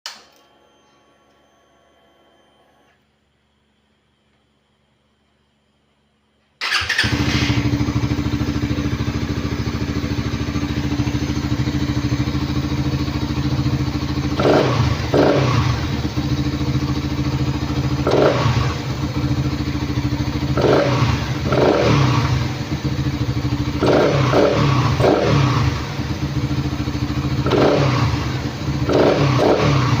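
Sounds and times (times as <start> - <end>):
motorcycle engine idling: 6.6 - 30.0
motorcycle engine starting: 6.6 - 30.0
motorcycle engine throttle blips: 6.6 - 30.0.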